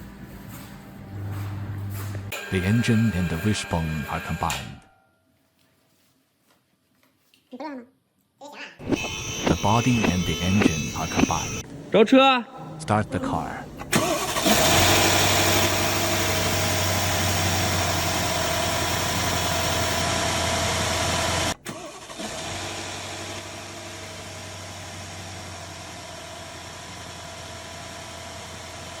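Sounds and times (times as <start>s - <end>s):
car engine idling: 14.0s - 21.5s.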